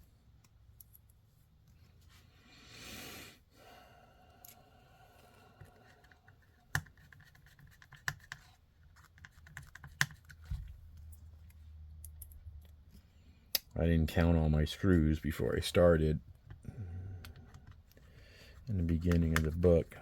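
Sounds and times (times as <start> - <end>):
small screws clicking and rattling: 12.0 - 12.8.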